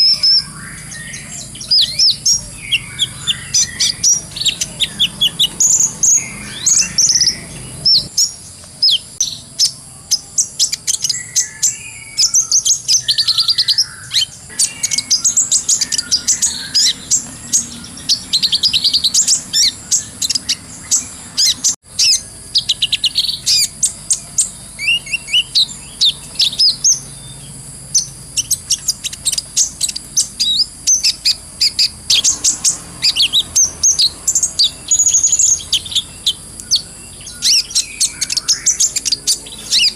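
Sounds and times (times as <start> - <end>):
sunbird chattering song: 0.0 - 39.9.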